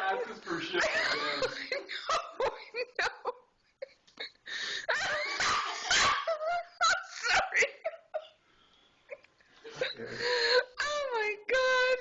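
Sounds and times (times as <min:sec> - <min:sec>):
people laughing: 0:00.0 - 0:04.0.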